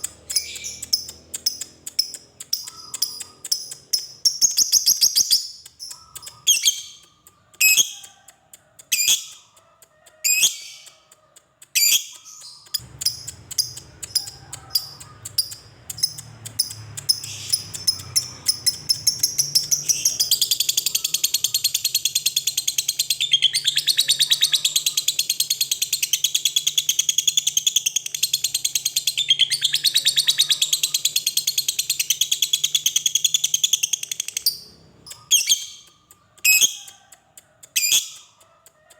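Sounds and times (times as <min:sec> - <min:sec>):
lovebird calling and trilling: 0:00.0 - 0:38.4.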